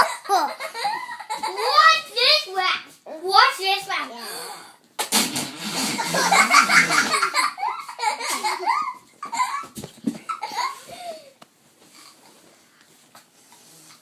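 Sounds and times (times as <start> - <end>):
children laughing: 0.0 - 2.0, 5.8 - 11.4.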